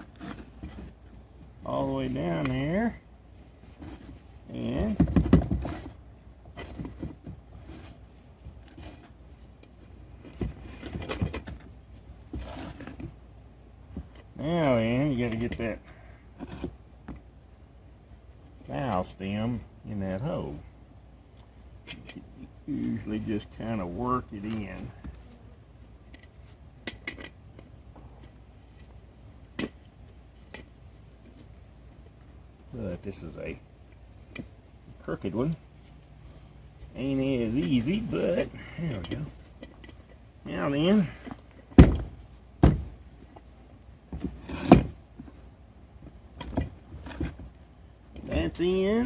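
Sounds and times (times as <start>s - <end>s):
sharp handling clicks and knocks: 0.0s - 3.1s, 3.7s - 14.4s, 15.2s - 17.3s, 21.3s - 33.2s, 33.8s - 36.8s, 37.4s - 49.0s
rubber rubbing and scraping: 12.3s - 13.2s.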